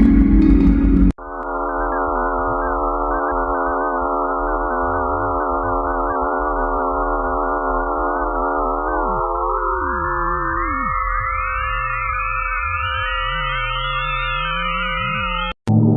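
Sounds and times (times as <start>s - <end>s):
eerie electronic drone: 0.0s - 15.9s.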